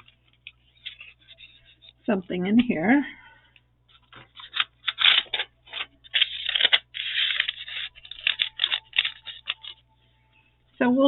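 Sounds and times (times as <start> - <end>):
paper rustling and scraping: 0.0 - 2.0, 3.9 - 9.8.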